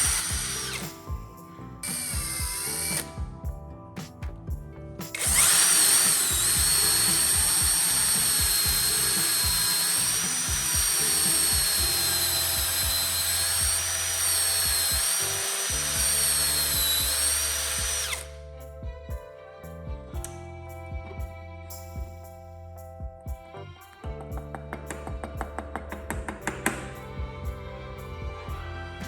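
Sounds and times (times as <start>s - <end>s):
electric power tool whining: 0.0s - 3.2s, 5.2s - 18.3s
background music: 0.0s - 29.0s.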